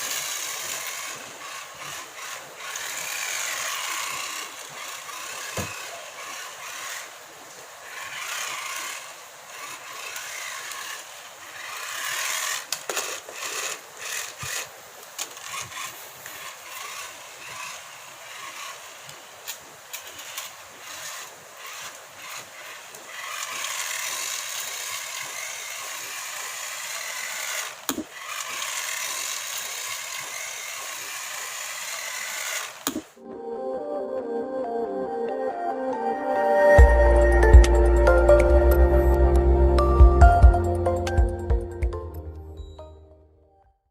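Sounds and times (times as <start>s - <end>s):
small electric motor whirring: 0.0s - 33.2s
toy car clicks and knocks: 8.1s - 18.8s, 19.5s - 33.1s.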